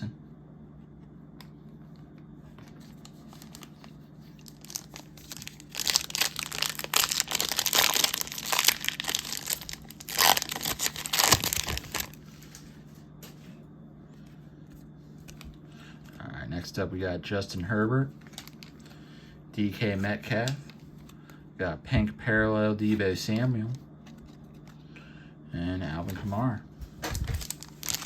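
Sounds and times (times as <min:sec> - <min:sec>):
faint steady hum: 0:00.0 - 0:28.0
plastic wrapper tearing and crinkling: 0:02.8 - 0:12.2, 0:18.2 - 0:18.9, 0:27.0 - 0:28.0.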